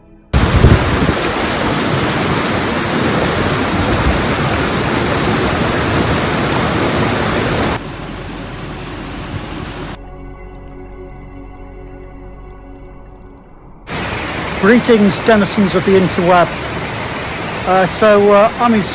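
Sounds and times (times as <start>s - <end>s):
waterfall rushing: 0.4s - 10.0s, 13.9s - 18.9s.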